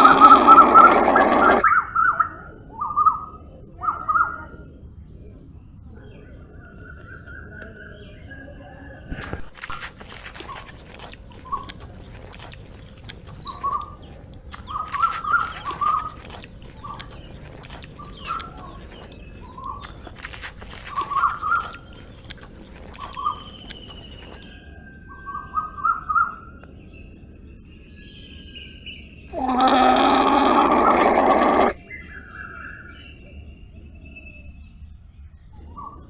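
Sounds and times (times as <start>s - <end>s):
loud animal call: 0.0s - 2.3s, 29.3s - 31.9s
bird chirps: 0.0s - 9.4s, 13.3s - 36.0s
rural background: 0.0s - 36.0s.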